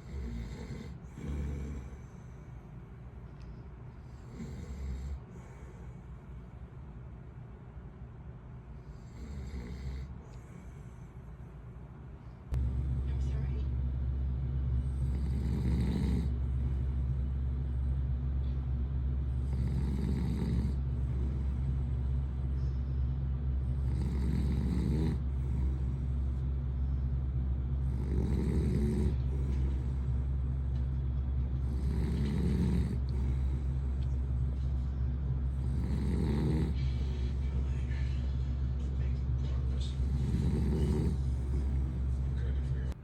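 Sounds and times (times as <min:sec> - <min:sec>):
man snoring: 0:00.0 - 0:02.2, 0:04.0 - 0:05.6, 0:08.9 - 0:10.7, 0:14.8 - 0:17.1, 0:19.3 - 0:22.5, 0:23.6 - 0:26.5, 0:27.8 - 0:30.3, 0:31.6 - 0:34.1, 0:35.4 - 0:37.4, 0:39.8 - 0:42.3
steady low hum: 0:00.0 - 0:43.0.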